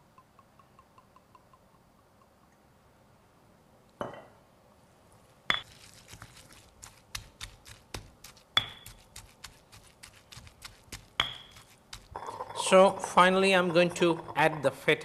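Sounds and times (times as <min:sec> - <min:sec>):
pestle pounding in a mortar: 0:05.5 - 0:14.6.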